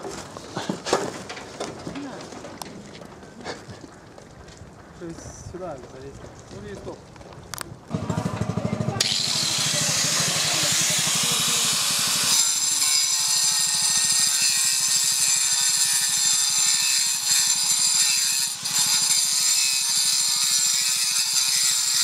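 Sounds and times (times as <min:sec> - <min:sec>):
power tool running with high whine: 0:07.9 - 0:16.9.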